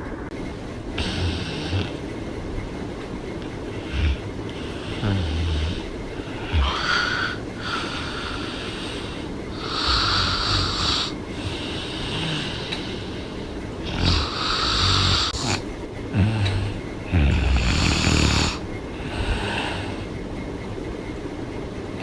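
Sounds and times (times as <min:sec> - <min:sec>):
woman snoring: 0:01.0 - 0:02.0, 0:03.8 - 0:20.0
airy breathing: 0:01.0 - 0:02.1, 0:03.6 - 0:20.2.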